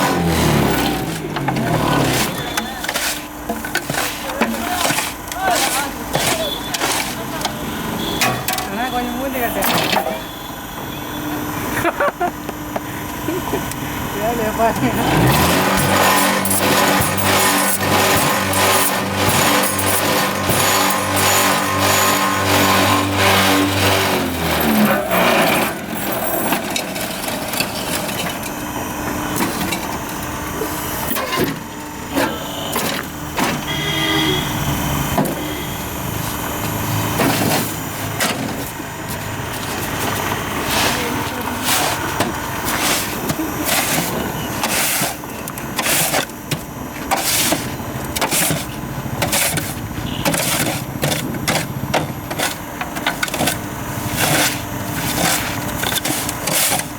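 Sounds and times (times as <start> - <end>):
block making machine motor: 0.0 - 10.3, 12.4 - 46.0
machine knocks and clatter: 15.3 - 28.5.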